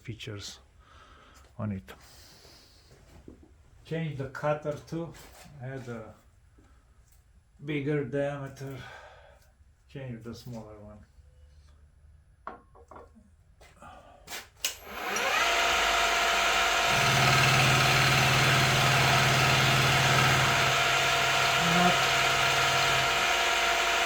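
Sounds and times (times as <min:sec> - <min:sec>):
milling spindle motor running: 0:14.8 - 0:24.0.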